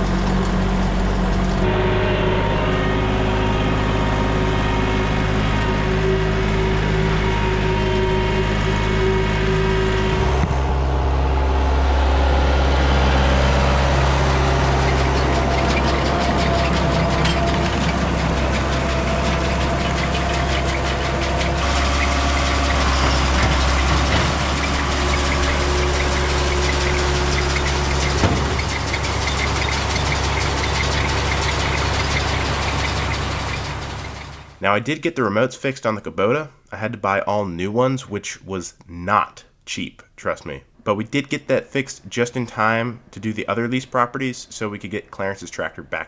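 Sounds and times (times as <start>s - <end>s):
tractor diesel engine running: 0.0s - 35.4s.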